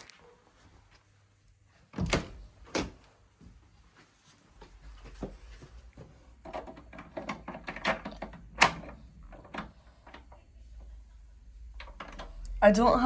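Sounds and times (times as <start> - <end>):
irregular clicks and knocks: 6.4 - 10.4.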